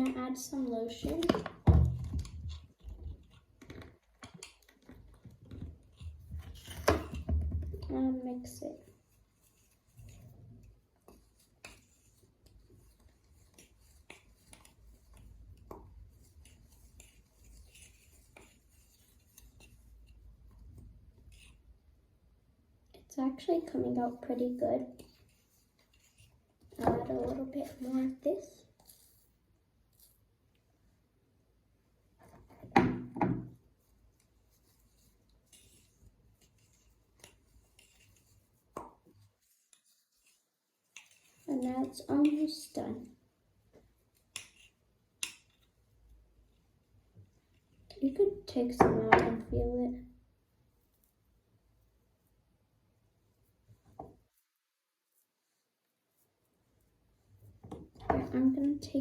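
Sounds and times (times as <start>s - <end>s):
stick stirring slime in a cup: 0.0s - 59.0s.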